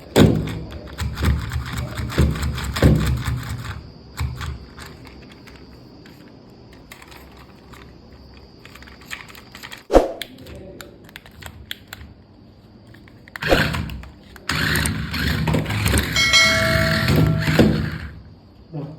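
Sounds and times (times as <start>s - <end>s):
plastic toy handling clicks: 4.2s - 12.2s, 12.9s - 16.0s.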